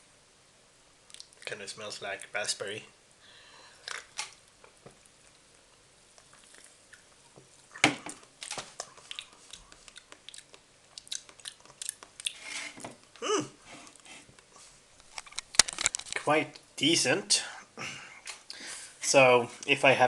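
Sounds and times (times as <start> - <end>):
lip smacks and mouth clicks: 1.1 - 1.5, 3.8 - 12.4.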